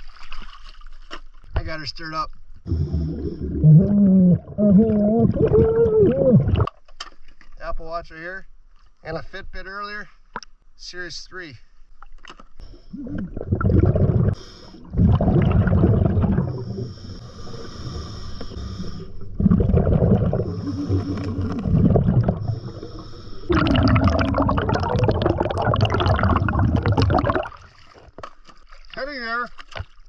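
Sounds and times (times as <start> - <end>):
gurgling exhaled bubbles: 2.7 - 6.7, 12.8 - 27.8
regulator inhale hiss: 14.4 - 14.9, 16.6 - 19.3, 20.5 - 21.6, 22.4 - 23.5.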